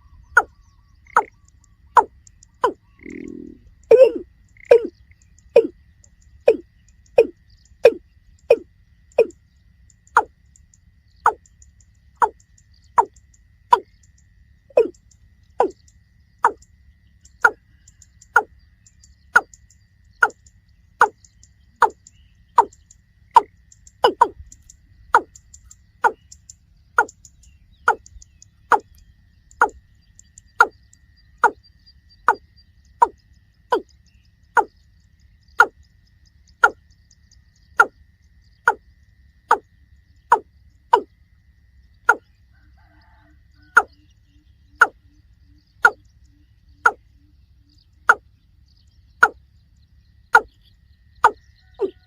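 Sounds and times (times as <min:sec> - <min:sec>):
bird calling short notes: 0:00.0 - 0:04.9, 0:07.2 - 0:08.6.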